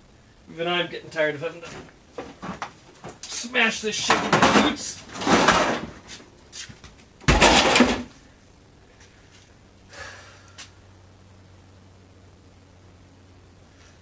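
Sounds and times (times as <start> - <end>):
boots crushing refrigerator parts: 1.6 - 6.2, 6.8 - 8.2.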